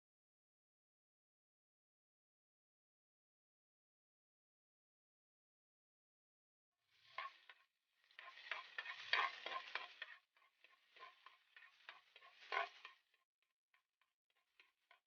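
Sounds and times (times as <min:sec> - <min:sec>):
utensil scraping food in pan: 0:07.0 - 0:13.2.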